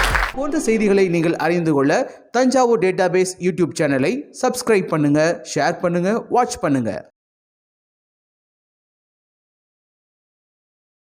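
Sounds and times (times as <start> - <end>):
person speaking: 0.0 - 7.2.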